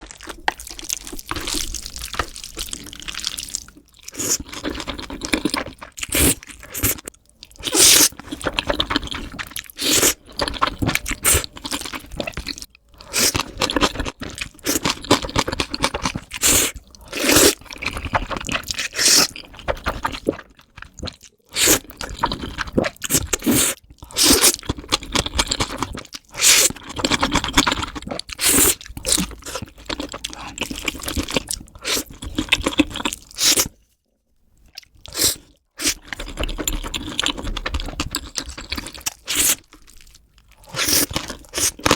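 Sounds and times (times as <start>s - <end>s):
crunchy chewing: 0.0s - 33.8s, 34.7s - 41.9s
wet slurping: 16.3s - 17.6s, 26.4s - 26.8s, 28.3s - 31.2s, 31.8s - 33.8s, 35.1s - 36.0s, 39.2s - 39.6s, 40.6s - 41.9s.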